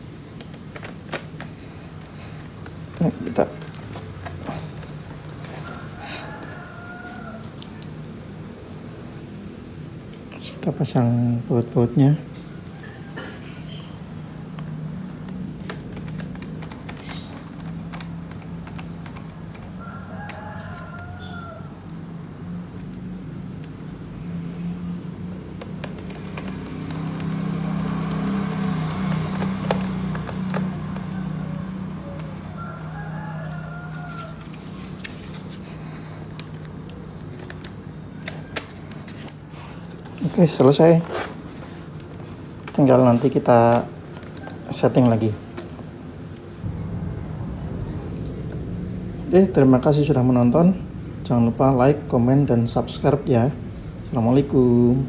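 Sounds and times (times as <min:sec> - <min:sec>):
steady low hum: 0:46.5 - 0:55.0.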